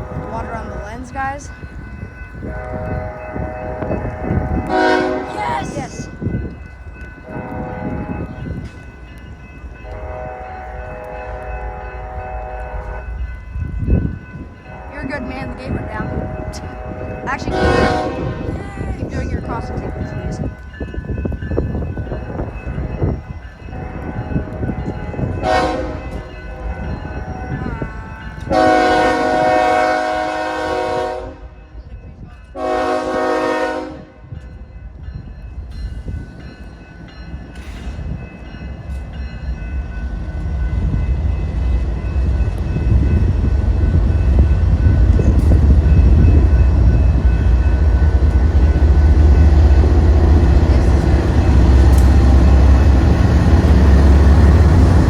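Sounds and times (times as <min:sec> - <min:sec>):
train rumbling past: 0:00.0 - 0:55.0
locomotive horn blasts: 0:02.4 - 0:05.5, 0:07.2 - 0:08.3, 0:09.8 - 0:13.1, 0:14.6 - 0:20.5, 0:23.7 - 0:27.0, 0:28.5 - 0:31.5, 0:32.6 - 0:34.3.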